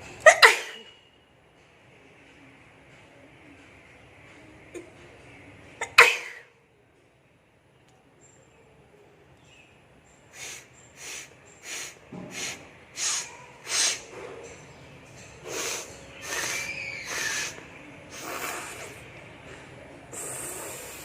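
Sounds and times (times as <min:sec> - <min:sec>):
woman blowing her nose: 0:10.4 - 0:14.0, 0:15.5 - 0:19.0, 0:20.2 - 0:21.0.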